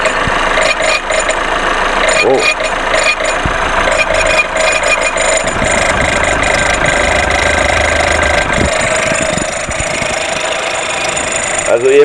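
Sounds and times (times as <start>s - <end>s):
car engine idling: 0.0s - 12.0s
rapid metallic ticking: 0.5s - 12.0s.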